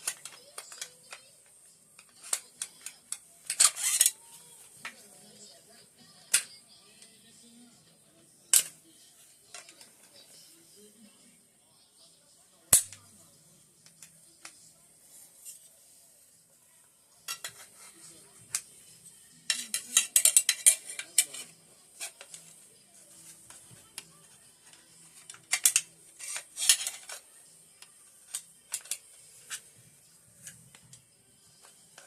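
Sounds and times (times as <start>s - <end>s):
metal parts clinking and clattering: 25.5s - 27.2s.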